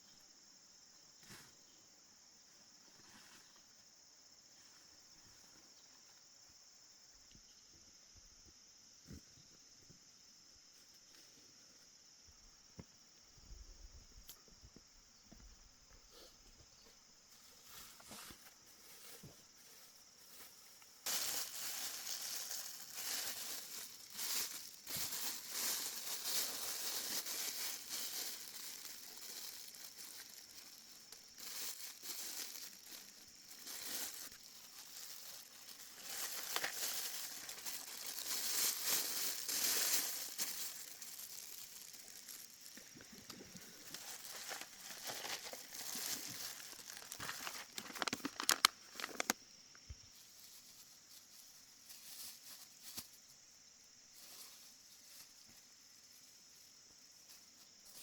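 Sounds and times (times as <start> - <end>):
rustling and crinkling: 2.9 - 6.3, 14.1 - 53.4, 54.1 - 58.0.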